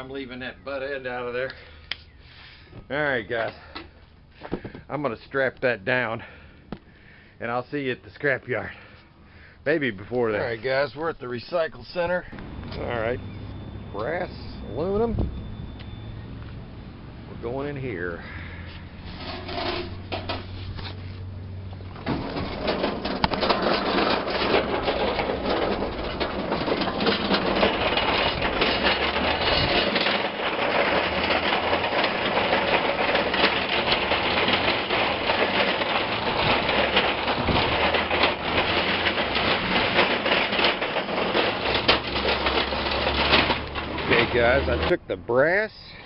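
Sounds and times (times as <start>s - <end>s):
machinery humming: 12.4s - 44.9s
metal clattering and clanking: 18.9s - 45.0s.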